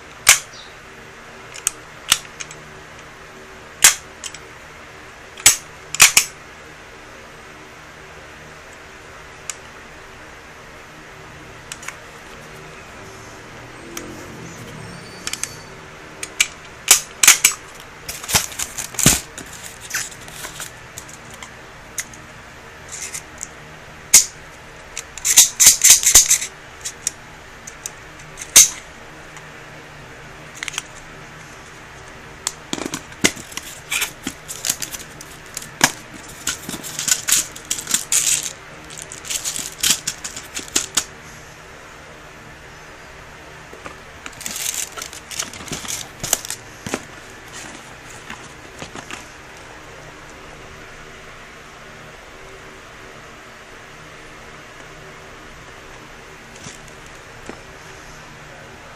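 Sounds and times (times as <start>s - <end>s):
pistol parts clicking: 0.2s - 0.5s, 1.5s - 3.1s, 3.8s - 4.4s, 5.4s - 6.3s, 16.2s - 22.2s, 24.1s - 28.8s, 32.4s - 41.1s
pistol parts rattling: 5.4s - 6.3s, 16.2s - 22.2s, 24.1s - 28.8s, 32.4s - 41.1s, 43.8s - 49.3s.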